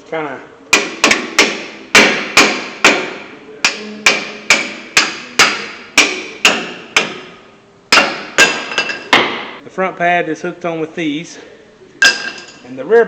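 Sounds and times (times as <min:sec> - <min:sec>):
hammer striking metal: 0:00.7 - 0:09.6.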